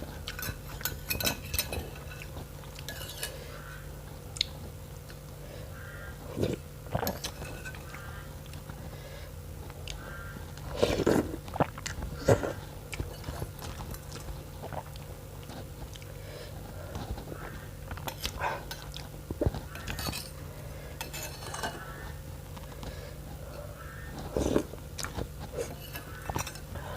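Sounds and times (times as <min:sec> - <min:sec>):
chewing noodles and meat: 0:09.7 - 0:20.0.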